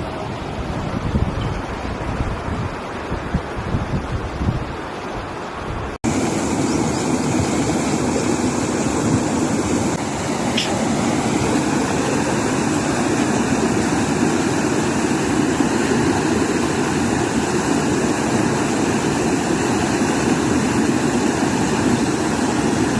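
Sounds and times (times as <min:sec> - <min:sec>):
floodwater rushing: 0:06.0 - 0:22.9.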